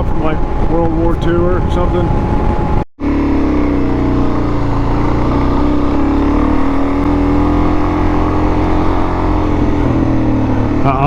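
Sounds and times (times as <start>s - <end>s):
wind rumble on microphone: 0.0s - 2.9s, 3.6s - 11.0s
dirt bike engine cruising: 0.0s - 11.0s.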